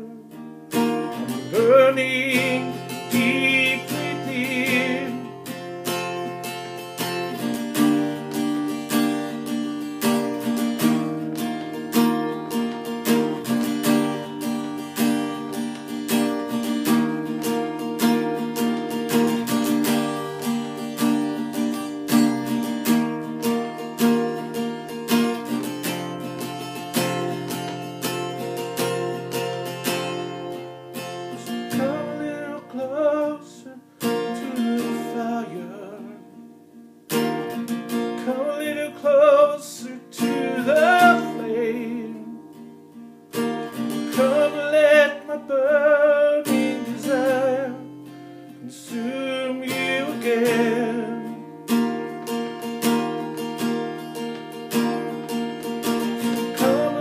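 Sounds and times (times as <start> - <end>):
person singing: 0.0 - 5.7, 31.3 - 36.4, 38.1 - 42.5, 43.8 - 48.0, 48.6 - 51.5, 56.1 - 57.0
acoustic guitar strumming: 0.0 - 57.0.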